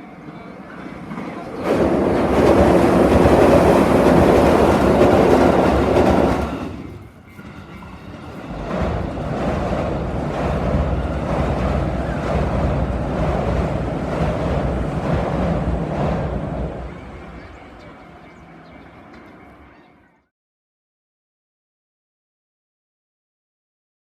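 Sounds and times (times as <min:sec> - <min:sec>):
train rushing noise: 0:00.0 - 0:20.1
train wheels clattering over rail joints: 0:01.1 - 0:17.0.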